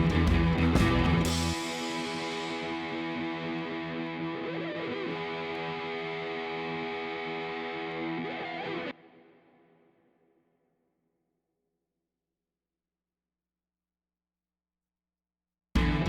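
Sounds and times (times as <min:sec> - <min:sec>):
distorted electric guitar chords: 0:00.0 - 0:09.3, 0:15.8 - 0:16.0.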